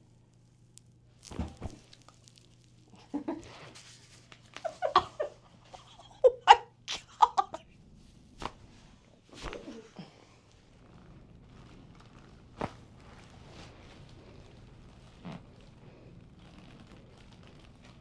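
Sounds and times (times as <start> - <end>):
back pops and cracks: 0.8 - 2.8, 8.4 - 8.7, 12.5 - 13.3
person laughing: 2.9 - 3.6, 4.6 - 7.6.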